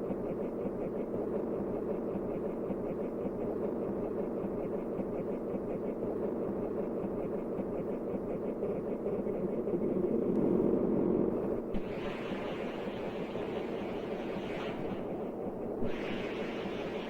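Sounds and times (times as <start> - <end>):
steady rumbling: 9.3 - 17.0.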